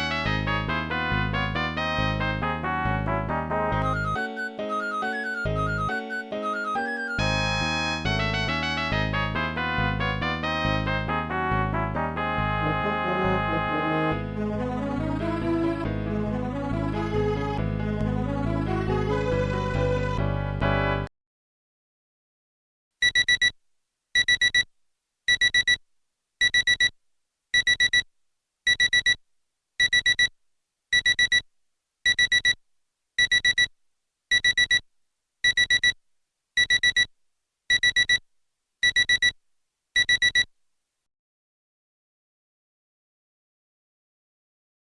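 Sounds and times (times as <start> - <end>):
alarm clock beeping: 3.8 - 7.3, 23.0 - 23.5, 25.3 - 25.8, 32.1 - 32.5, 35.5 - 35.9, 36.6 - 37.1, 37.7 - 38.2, 38.8 - 39.3, 40.0 - 40.5.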